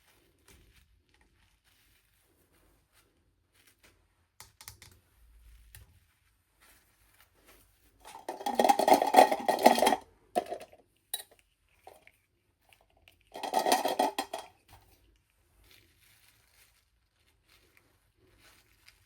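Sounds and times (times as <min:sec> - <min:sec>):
plastic toy pieces rattling: 0:08.1 - 0:10.7, 0:13.3 - 0:14.5.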